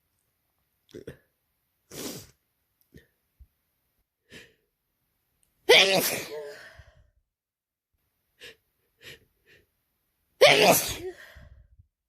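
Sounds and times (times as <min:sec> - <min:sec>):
loud messy sneeze: 0:05.7 - 0:06.7, 0:10.4 - 0:11.2.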